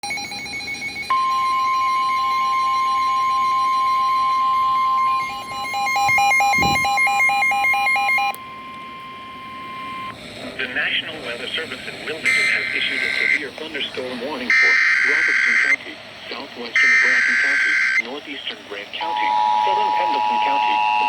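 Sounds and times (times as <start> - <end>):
electronic alarm beeping: 0.0 - 10.2, 14.5 - 15.8, 16.8 - 18.0, 19.0 - 21.0
steady weather radio alarm tone: 0.0 - 21.0.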